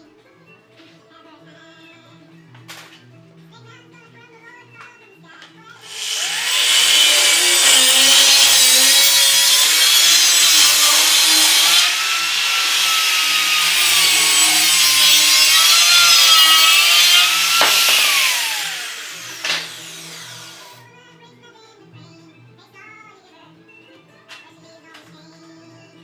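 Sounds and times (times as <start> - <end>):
power tool cutting metal pipe: 5.8 - 20.8.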